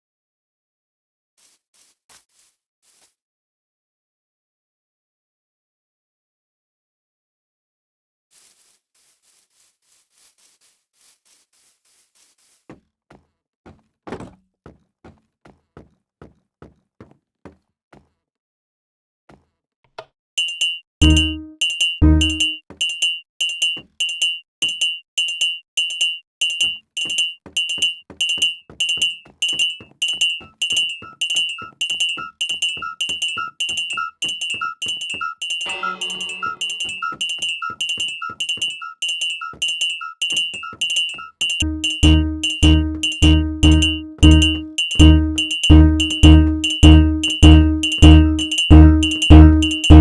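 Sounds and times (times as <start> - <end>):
high-pitched smoke alarm beeps: 20.4 - 50.0
lower-pitched alarm beep: 21.0 - 22.6, 26.4 - 50.0
fire alarm horn pulses: 35.7 - 37.0.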